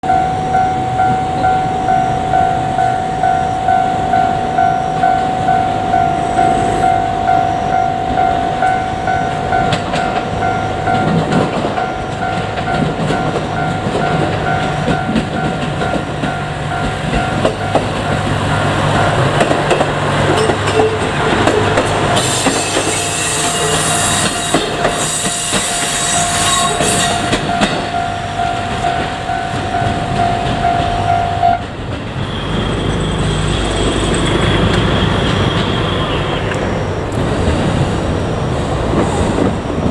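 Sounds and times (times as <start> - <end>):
level-crossing warning bell: 0.0 - 39.5
train wheels clattering on rails: 8.2 - 33.6
diesel engine running: 32.3 - 38.6.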